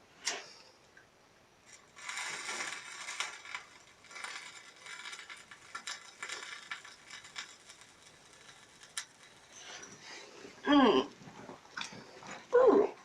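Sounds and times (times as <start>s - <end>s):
rustling crinkling handling noise: 1.6s - 10.6s.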